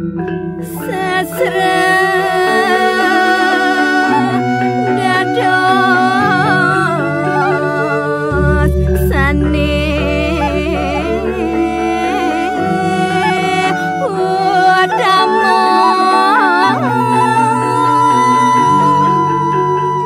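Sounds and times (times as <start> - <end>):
sung melody with ornamented notes: 0.0 - 20.0
held bass and keyboard tones: 4.1 - 14.3.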